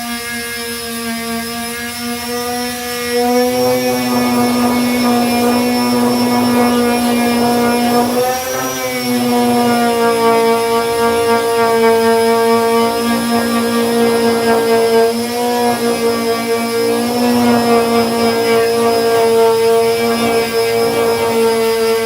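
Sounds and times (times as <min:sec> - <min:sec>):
electric sander whining: 0:00.0 - 0:22.0
sanding disc hiss: 0:00.0 - 0:22.0.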